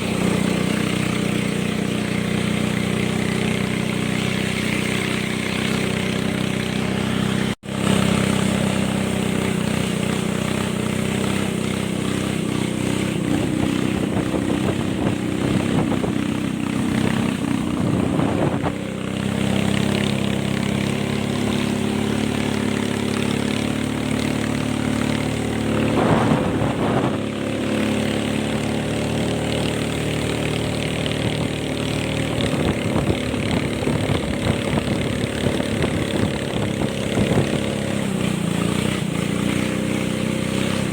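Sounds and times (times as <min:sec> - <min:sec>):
boat engine running: 0:00.0 - 0:40.9.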